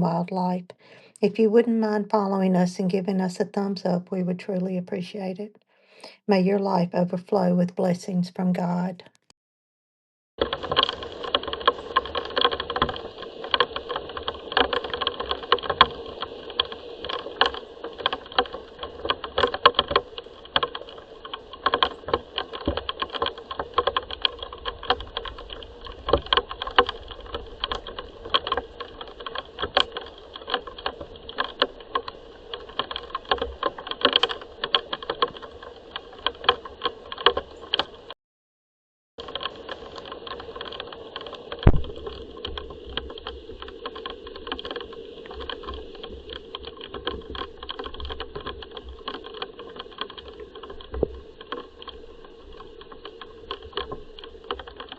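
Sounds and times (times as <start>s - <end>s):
rain falling: 10.4s - 38.2s, 39.2s - 54.9s.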